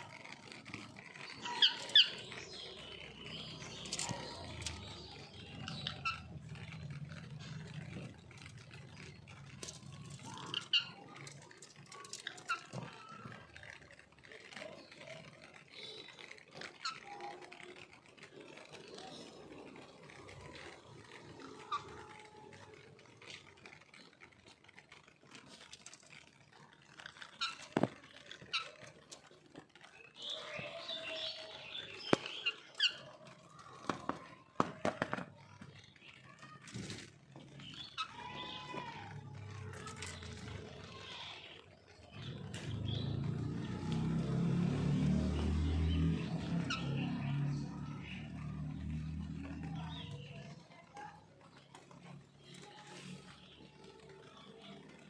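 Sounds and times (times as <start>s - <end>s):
parrot chirping and squawking: 1.0s - 6.8s.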